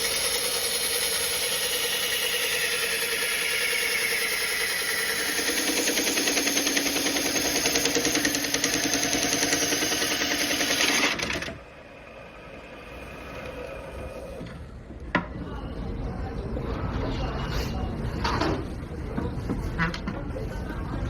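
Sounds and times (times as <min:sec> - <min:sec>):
small machine rattling: 0:00.0 - 0:11.7.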